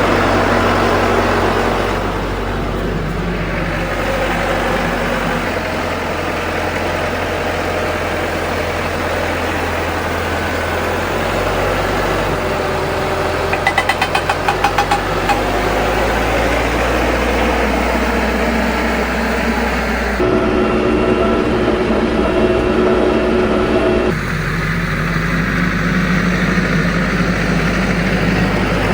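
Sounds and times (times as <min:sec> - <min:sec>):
vehicle engine and road noise: 0:00.0 - 0:28.9
short beeps: 0:13.5 - 0:15.5.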